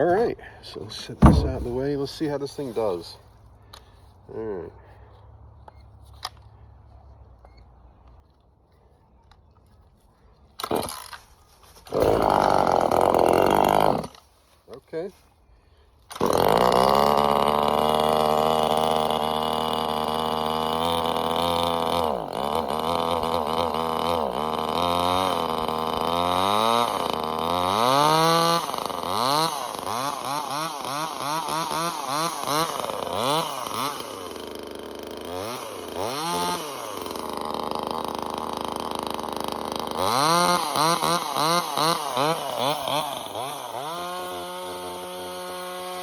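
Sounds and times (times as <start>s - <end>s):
chainsaw revving and idling: 1.0s - 2.1s, 11.9s - 14.2s, 16.1s - 46.0s.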